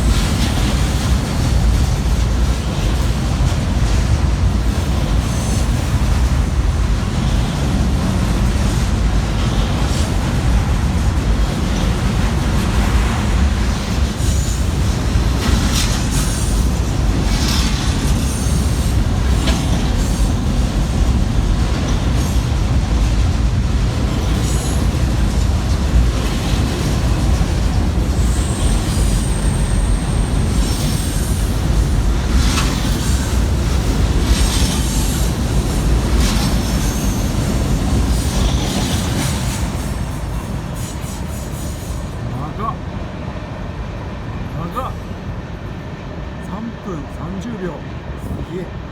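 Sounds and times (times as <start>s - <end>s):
train wagons rumbling: 0.0s - 48.9s
high wheel squeals: 28.2s - 31.6s.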